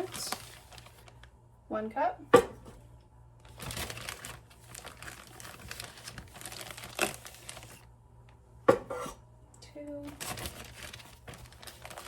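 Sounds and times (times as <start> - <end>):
flour bag crinkling: 0.0 - 1.4, 3.4 - 7.9, 10.0 - 12.0.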